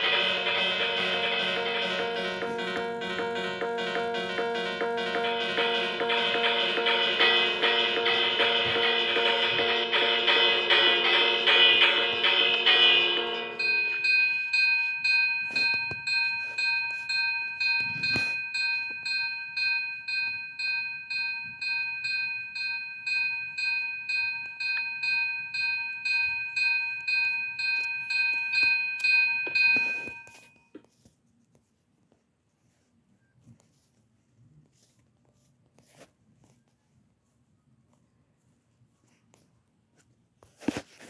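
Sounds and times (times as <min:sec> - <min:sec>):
fire alarm bell ringing: 0:00.0 - 0:30.7.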